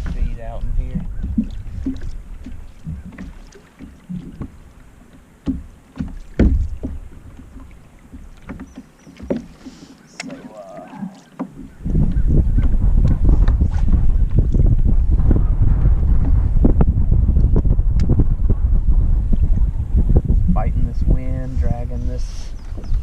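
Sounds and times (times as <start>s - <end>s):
wind rumbling on microphone: 0.0s - 9.5s, 10.1s - 23.0s
water splashing against kayak hull: 0.0s - 18.3s.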